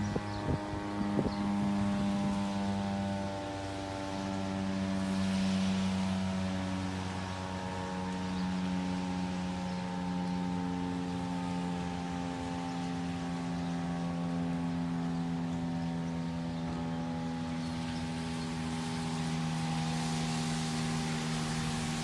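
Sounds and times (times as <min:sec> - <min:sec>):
two-tone fire siren: 0:00.0 - 0:22.0.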